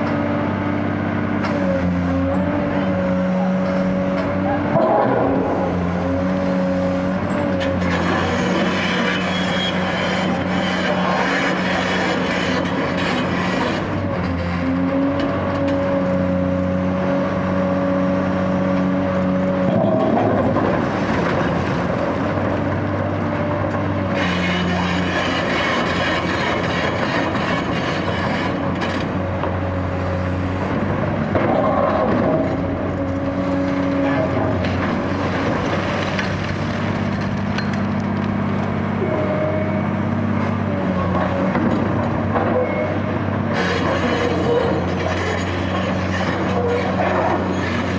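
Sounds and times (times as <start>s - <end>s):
excavator diesel engine under load: 0.0s - 47.9s
concrete crunching and scraping: 24.0s - 29.2s.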